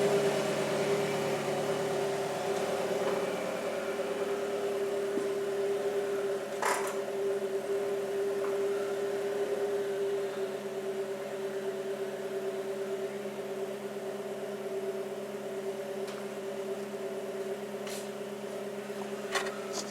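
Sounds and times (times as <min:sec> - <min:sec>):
steady mechanical hum: 0:00.0 - 0:19.9.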